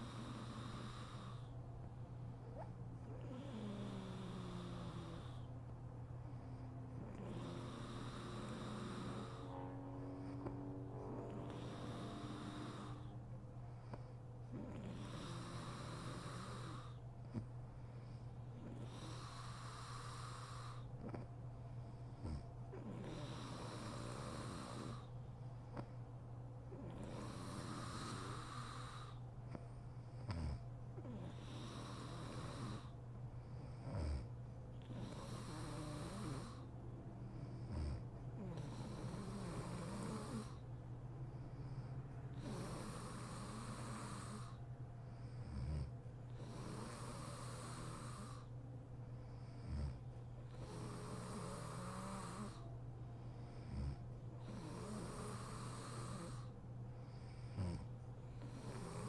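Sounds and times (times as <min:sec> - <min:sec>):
woman snoring: 0:00.0 - 0:01.5, 0:03.1 - 0:05.5, 0:06.9 - 0:13.2, 0:14.6 - 0:17.0, 0:18.6 - 0:21.2, 0:22.3 - 0:25.1, 0:26.7 - 0:29.2, 0:30.3 - 0:33.0, 0:33.8 - 0:40.6, 0:41.8 - 0:44.6, 0:45.4 - 0:48.5, 0:49.6 - 0:52.7, 0:53.6 - 0:56.6, 0:57.5 - 0:59.0
steady low hum: 0:00.0 - 0:59.0.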